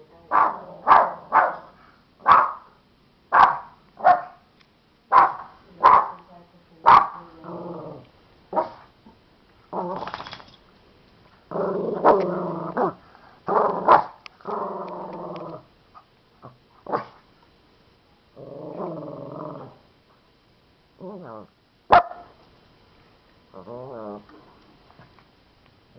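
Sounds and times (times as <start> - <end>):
dog barking: 0.3 - 4.4, 5.1 - 6.2, 6.9 - 7.2, 8.6 - 8.8, 13.9 - 14.2, 21.9 - 22.4.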